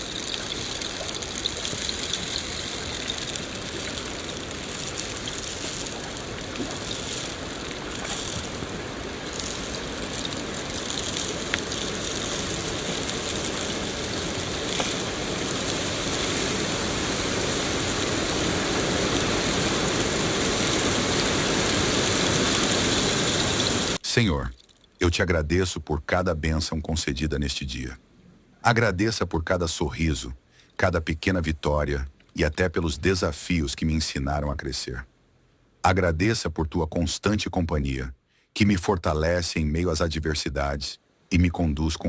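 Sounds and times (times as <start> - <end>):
steady rain falling: 0.0 - 28.0.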